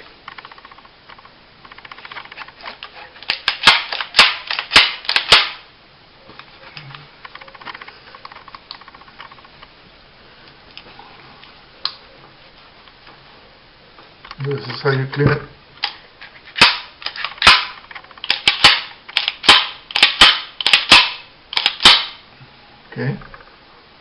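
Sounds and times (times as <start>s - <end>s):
pistol parts clicking and snapping: 1.7s - 5.6s, 15.8s - 16.0s, 16.6s - 22.2s.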